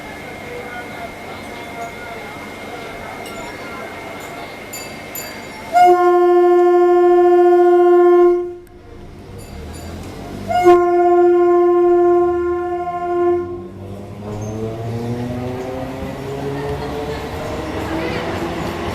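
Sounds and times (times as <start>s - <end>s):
train rumbling: 0.0s - 18.9s
train horn blasts: 5.7s - 8.8s, 10.4s - 13.8s.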